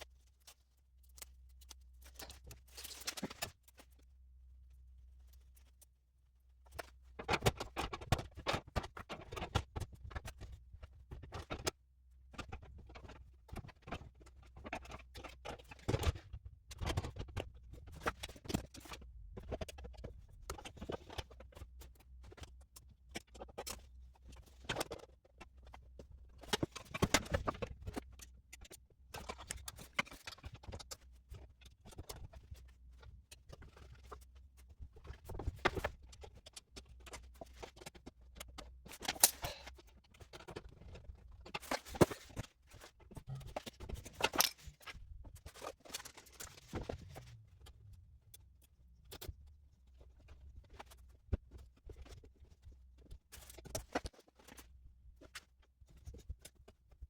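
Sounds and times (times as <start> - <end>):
fan parts and screws clattering: 39.0 - 39.7, 43.3 - 44.9
low steady hum: 46.1 - 50.9.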